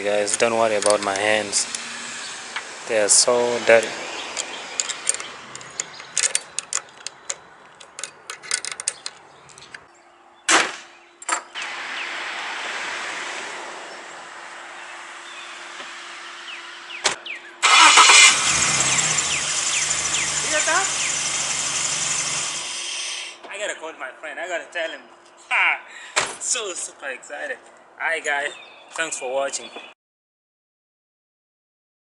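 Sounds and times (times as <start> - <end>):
car engine cranking and running: 0.1 - 9.8, 17.6 - 22.8.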